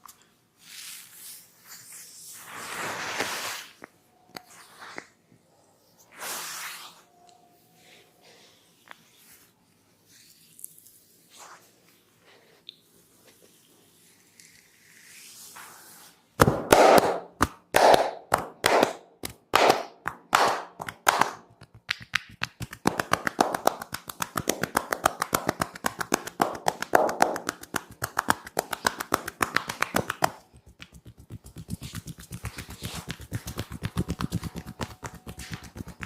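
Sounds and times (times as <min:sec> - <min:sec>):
hands slapping on body: 0:16.4 - 0:36.0.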